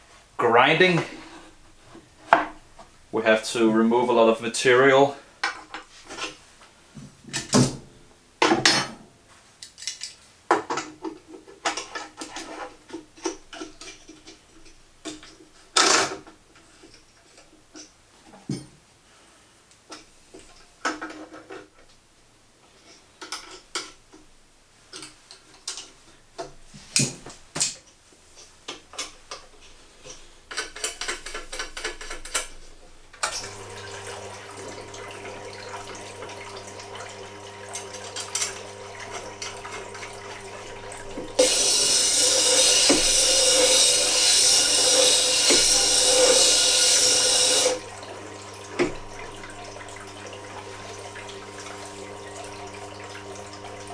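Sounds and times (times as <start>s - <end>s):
grinder motor humming: 33.3s - 53.9s
chisel grinding on wheel: 38.2s - 47.8s.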